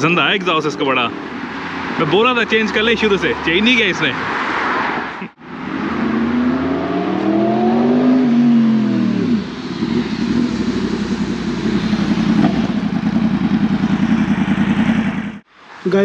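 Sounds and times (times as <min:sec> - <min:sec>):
motorcycle engine revving and idling: 0:05.8 - 0:15.5.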